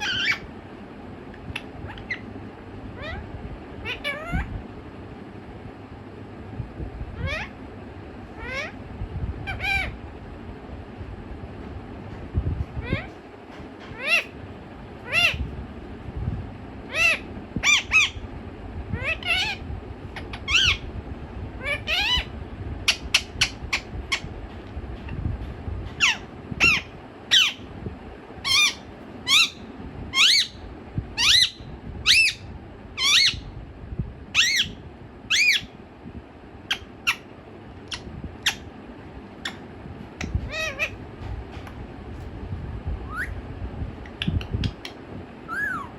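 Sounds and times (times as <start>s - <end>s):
parakeet shrill calls: 0.0s - 0.5s, 1.6s - 2.3s, 3.0s - 3.2s, 3.8s - 4.5s, 7.2s - 7.6s, 8.4s - 8.8s, 9.5s - 10.0s, 13.9s - 14.3s, 15.0s - 15.4s, 16.9s - 18.2s, 19.0s - 19.6s, 20.2s - 20.8s, 21.6s - 24.3s, 26.0s - 27.7s, 28.4s - 30.6s, 31.2s - 33.5s, 34.3s - 35.8s, 36.7s - 37.3s, 37.9s - 38.7s, 40.5s - 41.0s, 43.1s - 43.4s, 45.5s - 45.9s.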